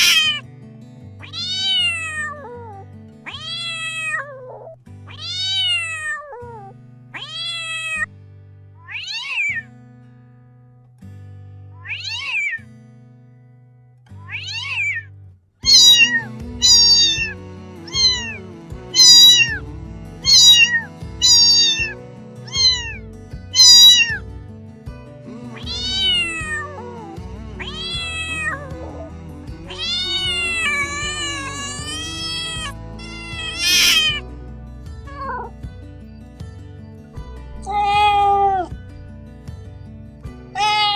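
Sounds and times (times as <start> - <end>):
kitten meowing: 0.0 - 0.4, 1.2 - 8.1, 8.8 - 9.6, 11.8 - 12.6, 14.2 - 19.6, 20.2 - 24.2, 25.5 - 34.3, 35.1 - 35.5, 37.5 - 38.8, 40.5 - 40.9
background music: 15.6 - 40.9.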